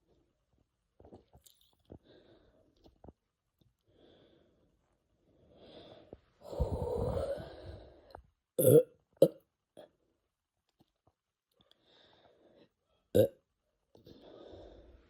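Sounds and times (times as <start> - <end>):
man burping: 8.6 - 9.4, 13.2 - 13.4.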